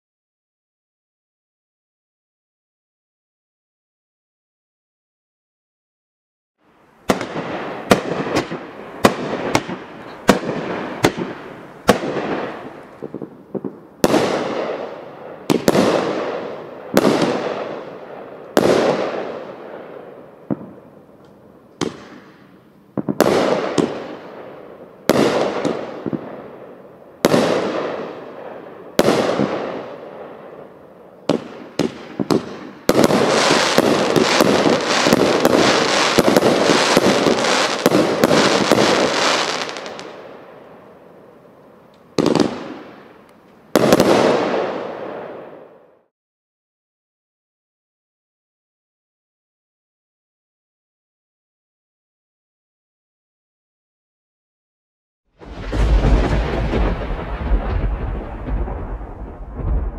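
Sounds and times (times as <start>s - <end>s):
firework crackle: 7.0s - 19.7s, 21.8s - 40.6s, 55.4s - 59.9s
firework bangs: 7.0s - 20.8s, 21.8s - 40.6s, 42.1s - 45.7s, 55.4s - 59.9s.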